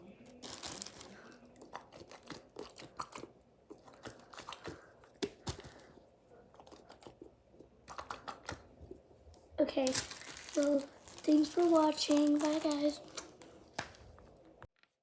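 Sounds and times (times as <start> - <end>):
plastic packaging crinkling: 0.2 - 3.2, 9.6 - 15.0.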